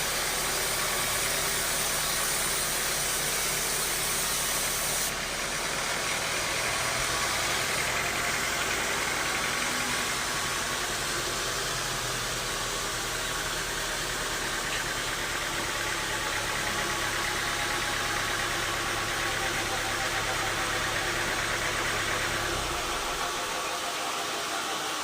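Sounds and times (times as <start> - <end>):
steady hiss: 0.0 - 5.2.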